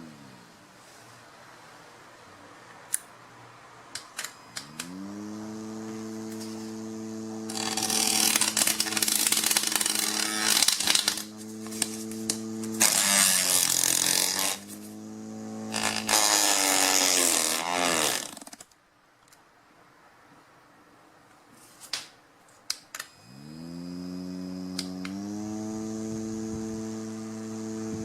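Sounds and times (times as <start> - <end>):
electric fan motor hum: 4.5 - 18.6, 23.2 - 28.0.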